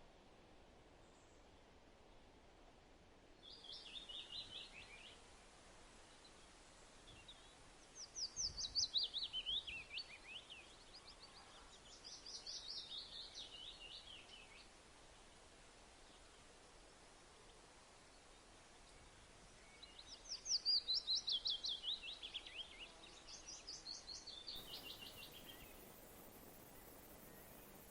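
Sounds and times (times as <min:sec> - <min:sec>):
faint background hiss: 0:00.0 - 0:27.9
bird singing: 0:19.7 - 0:27.9.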